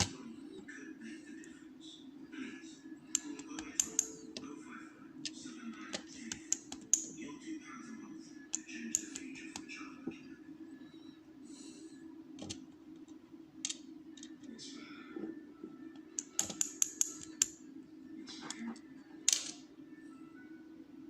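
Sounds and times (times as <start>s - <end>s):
steady low hum: 0.0s - 21.0s
small metal clicks and taps: 3.2s - 4.1s, 5.9s - 7.1s, 16.2s - 17.5s.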